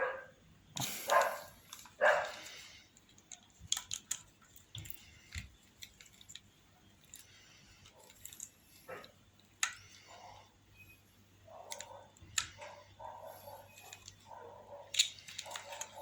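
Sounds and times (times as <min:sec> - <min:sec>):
dog barking: 0:00.0 - 0:00.3, 0:01.1 - 0:02.4, 0:11.5 - 0:13.7, 0:14.3 - 0:16.0.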